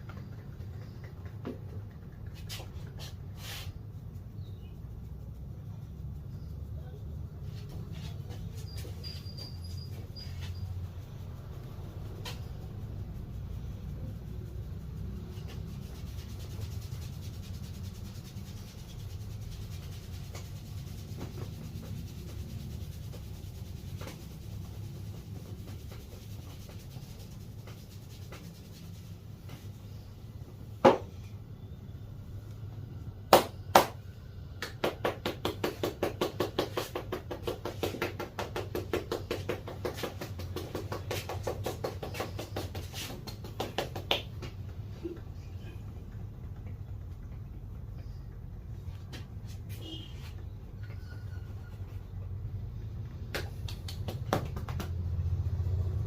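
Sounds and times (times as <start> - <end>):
low background rumble: 0.0 - 36.1
hands striking head and back: 33.3 - 34.0, 34.6 - 44.8, 53.2 - 55.0.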